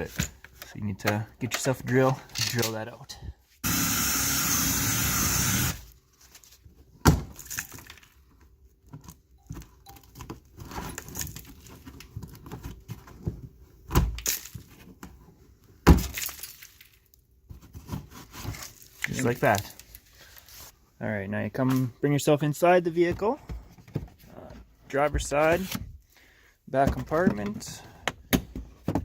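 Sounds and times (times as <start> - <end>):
power drill whirring: 3.6 - 5.9.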